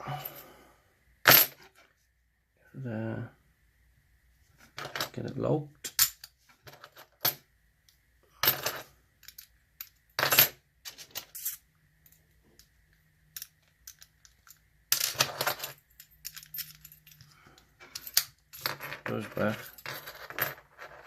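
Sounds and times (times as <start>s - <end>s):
padlock and keys clicking and rattling: 15.7s - 17.3s.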